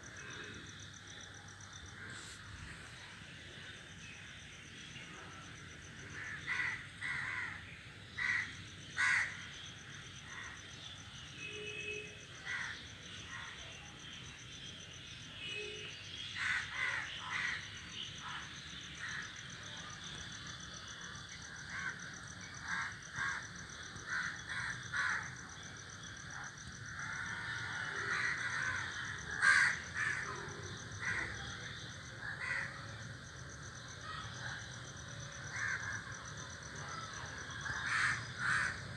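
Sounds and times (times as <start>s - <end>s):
crows cawing: 6.2s - 7.6s, 8.2s - 9.4s, 16.4s - 17.6s, 22.6s - 25.4s, 27.0s - 31.4s, 32.2s - 32.8s, 35.5s - 36.2s, 36.9s - 38.9s.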